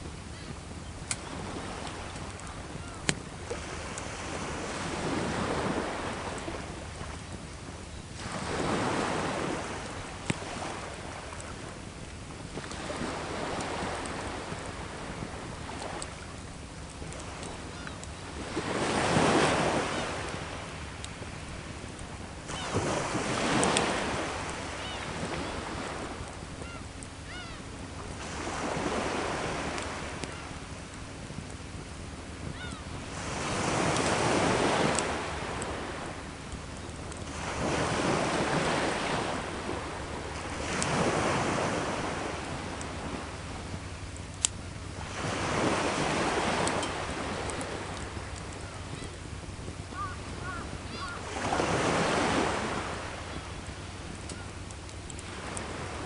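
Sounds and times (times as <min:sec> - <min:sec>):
campfire wood popping: 0:00.0 - 0:28.4, 0:29.4 - 0:51.4, 0:53.4 - 0:55.7
sea waves washing ashore: 0:00.0 - 0:56.0
wood fire crackling pops: 0:01.0 - 0:04.1, 0:09.6 - 0:10.5.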